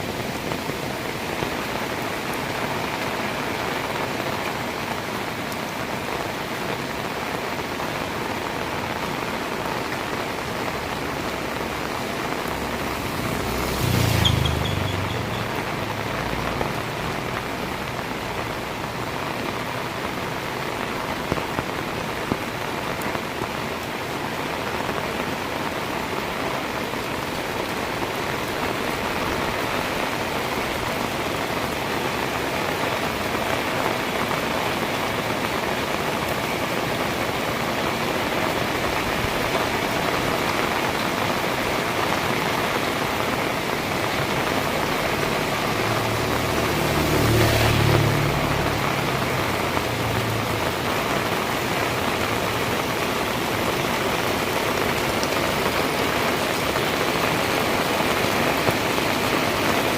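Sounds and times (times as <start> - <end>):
heavy rain: 0.0 - 59.9
raindrop ticks: 10.7 - 19.7.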